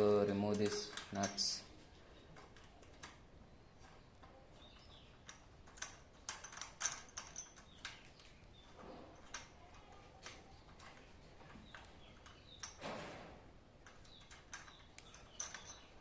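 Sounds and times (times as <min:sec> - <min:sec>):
sharp metal clicks and taps: 0:00.5 - 0:01.5, 0:13.8 - 0:16.0.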